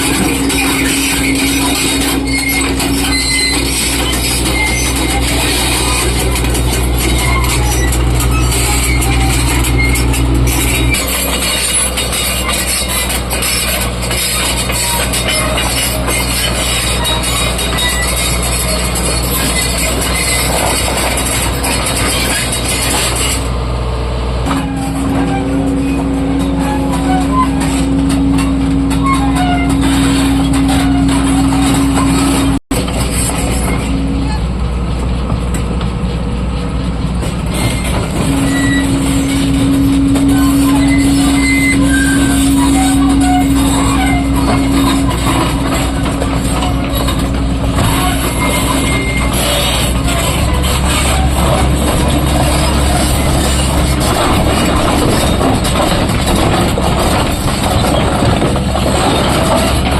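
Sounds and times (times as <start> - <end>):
heavy diesel machinery drone: 0.0 - 59.9
held whining tone: 37.5 - 59.9.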